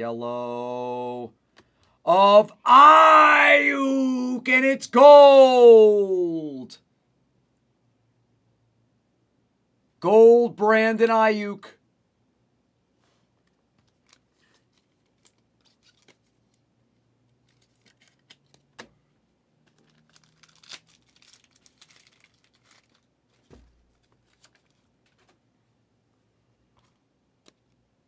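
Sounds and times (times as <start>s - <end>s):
cards clicking and rustling: 13.8s - 16.4s, 17.4s - 18.9s, 19.6s - 25.4s
wrappers crinkling and tearing: 13.9s - 16.6s, 19.6s - 25.4s.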